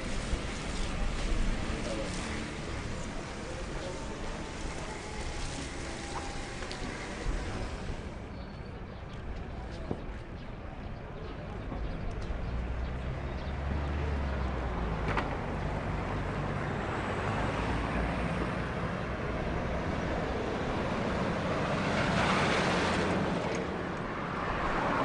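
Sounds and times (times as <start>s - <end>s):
road noise: 0.0s - 25.0s
vehicle passing: 12.4s - 25.0s.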